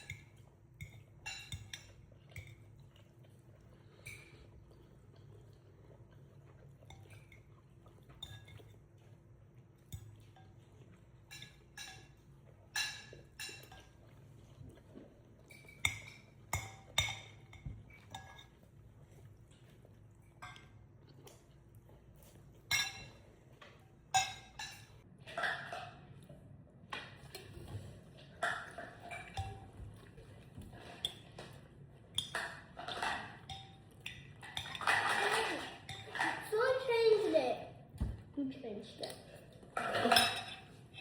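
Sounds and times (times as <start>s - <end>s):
cutlery clinking on plates: 0.0s - 2.7s, 11.2s - 14.0s, 22.6s - 26.0s, 30.7s - 36.4s, 39.8s - 40.8s.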